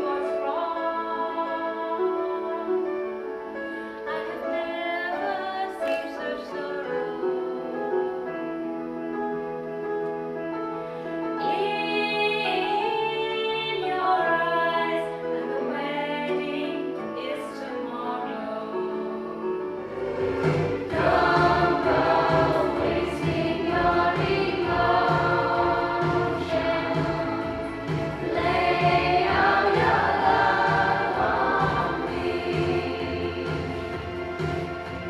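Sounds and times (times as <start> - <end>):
musical accompaniment: 0.0 - 35.0
cast singing in chorus: 19.9 - 33.6
bass and drums: 20.1 - 35.0.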